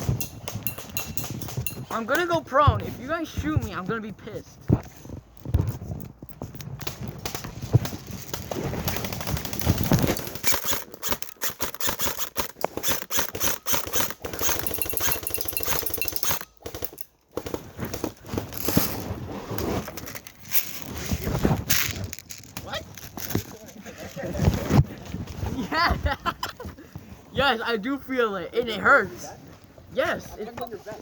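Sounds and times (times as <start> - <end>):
airsoft guns firing: 8.3 - 18.0.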